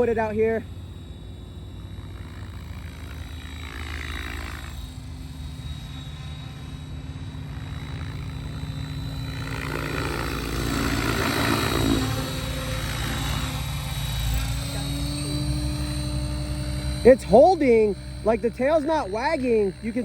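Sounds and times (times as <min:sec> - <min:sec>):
helicopter motor whine: 0:00.0 - 0:20.0
rotor blades whooshing: 0:00.0 - 0:20.0.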